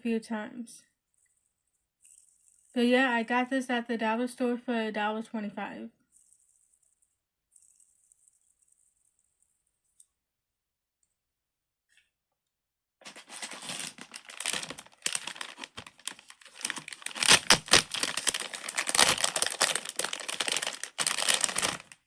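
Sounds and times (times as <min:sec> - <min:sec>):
plastic packaging crinkling: 0:13.0 - 0:22.0.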